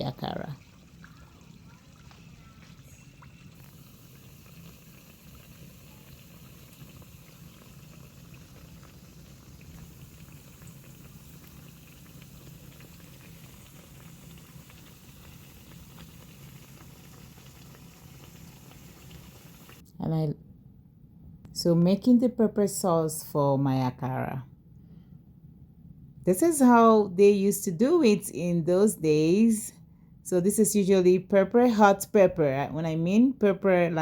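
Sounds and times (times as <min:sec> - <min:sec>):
batter deep-frying in oil: 0:00.0 - 0:19.8
low steady hum: 0:00.0 - 0:34.0.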